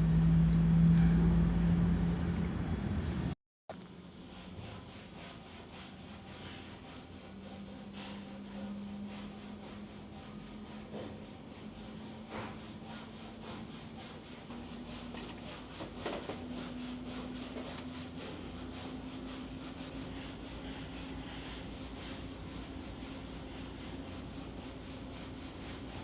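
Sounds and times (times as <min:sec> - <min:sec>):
steady low hum: 0:00.0 - 0:03.4.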